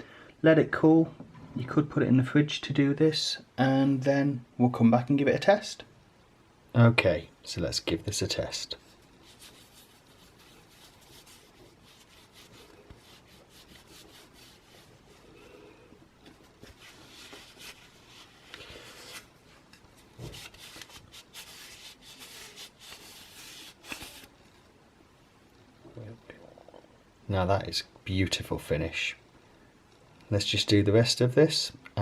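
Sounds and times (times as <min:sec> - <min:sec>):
scratchy rubbing on wood: 0:09.2 - 0:15.4.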